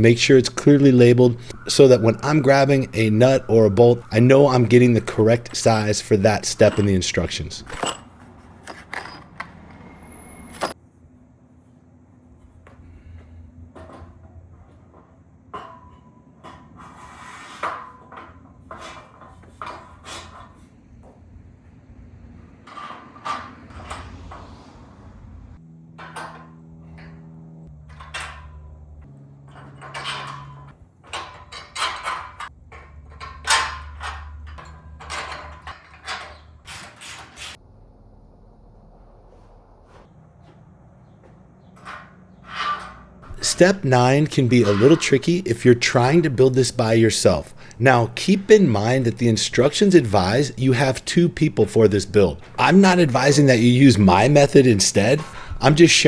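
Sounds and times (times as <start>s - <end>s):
parts scraping and rustling: 0.0s - 10.0s, 12.5s - 21.1s, 26.0s - 37.6s, 39.9s - 56.0s
low hum: 37.6s - 42.2s
low steady hum: 43.2s - 56.0s.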